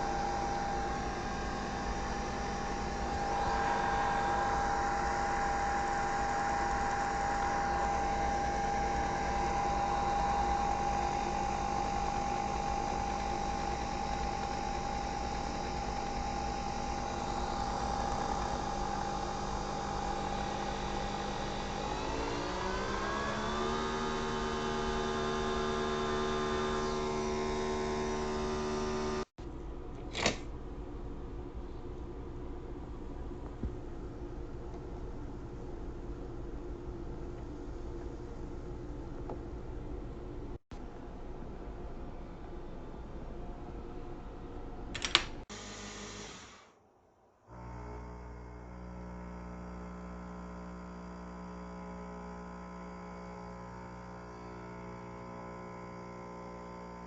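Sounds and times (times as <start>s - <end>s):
coffee machine motor whirring: 0.0s - 29.3s.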